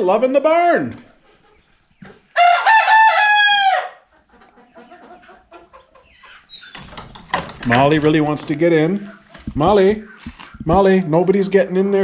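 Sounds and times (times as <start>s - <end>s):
chickens clucking: 0.0s - 12.0s
young rooster crowing: 2.4s - 4.0s.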